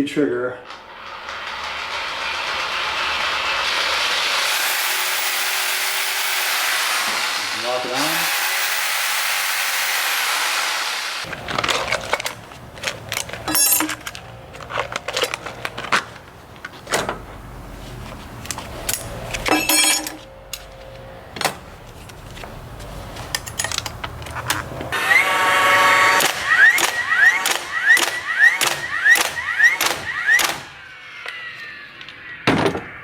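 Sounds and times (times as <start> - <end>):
knocks and metallic rattles: 0.6 - 6.3, 11.3 - 17.4, 18.4 - 24.9
reciprocating saw running: 0.6 - 11.3, 24.9 - 32.4.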